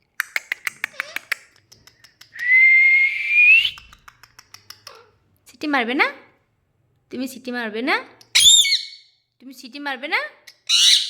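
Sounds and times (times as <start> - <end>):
long whistle: 2.4 - 3.8.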